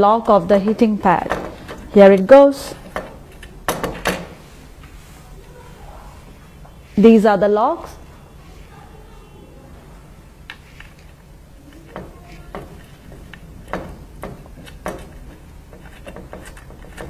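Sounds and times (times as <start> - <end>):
small parts clicking and tapping: 10.4 - 17.0.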